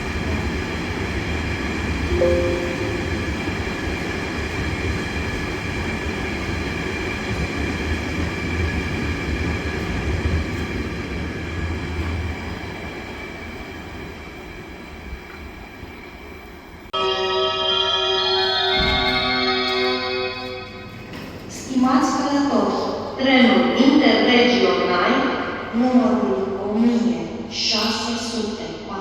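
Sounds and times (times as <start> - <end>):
freight train wheels rumbling: 0.0 - 16.9
musical station chime: 2.1 - 3.5.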